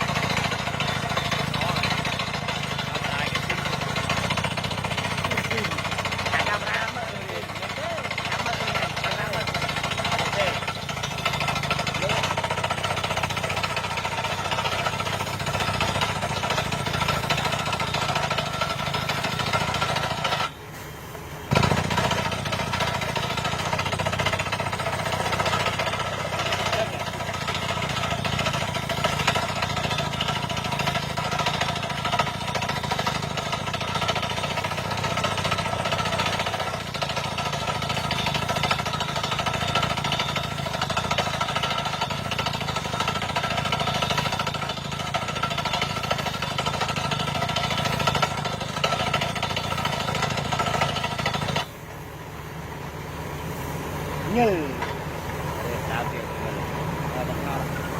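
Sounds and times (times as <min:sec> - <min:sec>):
rock drilling rig droning: 0:00.0 - 0:57.9.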